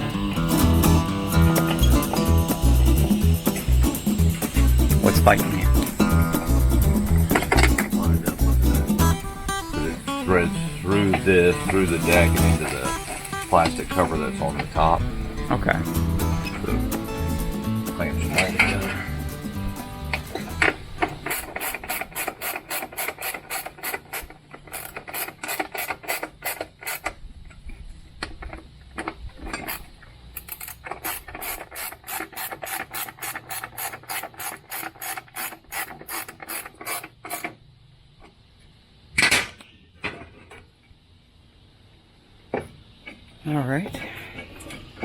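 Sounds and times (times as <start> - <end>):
ratchet wrench clicking: 0.6 - 9.1, 20.1 - 27.2, 29.6 - 37.5
metal clank: 6.8 - 8.3, 18.2 - 19.2.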